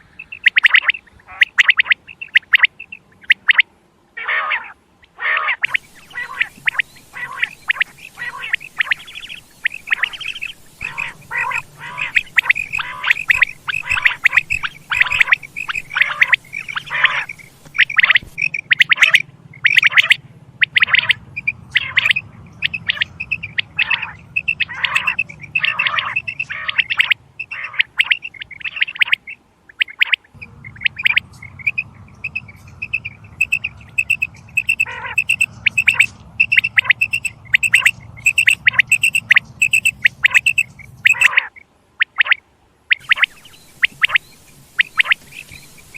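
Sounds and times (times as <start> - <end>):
quail calls: 0.0 - 45.9.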